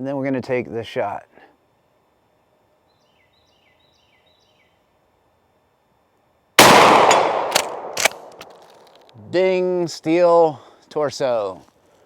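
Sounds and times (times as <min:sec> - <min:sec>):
shotgun blast echoing: 0:06.6 - 0:08.4.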